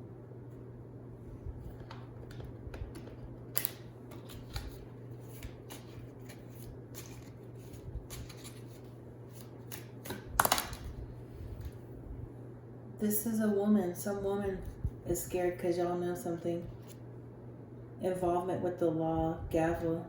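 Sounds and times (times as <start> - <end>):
low steady hum: 0.0 - 20.0
cards shuffling: 1.8 - 11.0.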